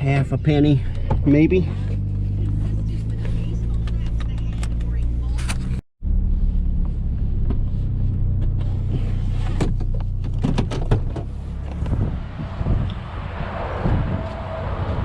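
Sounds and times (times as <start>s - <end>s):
truck engine humming: 0.0s - 10.4s.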